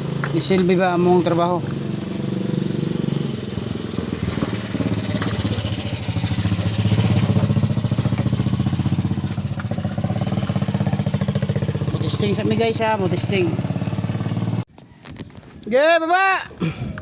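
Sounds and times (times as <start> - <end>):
truck engine idling: 3.4 - 14.6.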